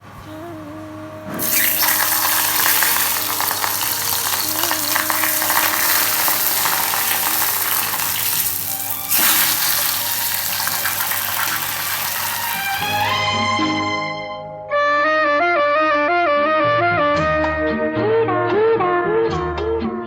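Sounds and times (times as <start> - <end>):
food sizzling in hot oil: 1.4 - 13.2.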